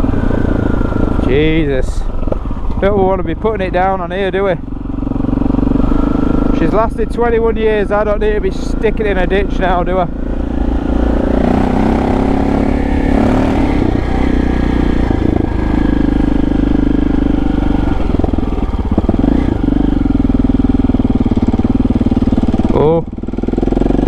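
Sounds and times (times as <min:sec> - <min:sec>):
motorcycle engine running: 0:00.0 - 0:24.0.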